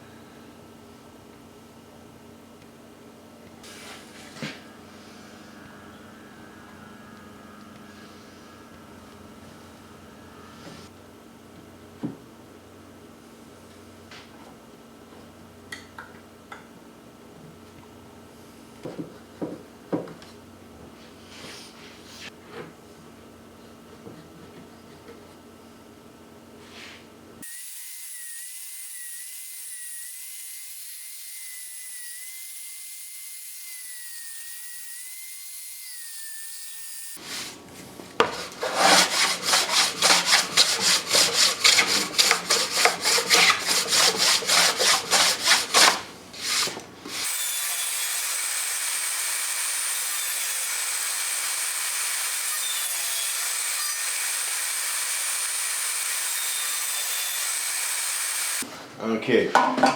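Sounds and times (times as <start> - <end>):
hand saw cutting wood: 35.8 - 58.7.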